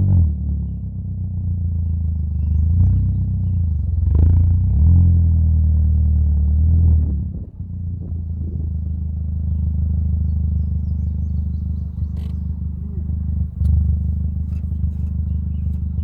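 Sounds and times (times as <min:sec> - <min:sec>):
car driving: 0:07.1 - 0:16.0.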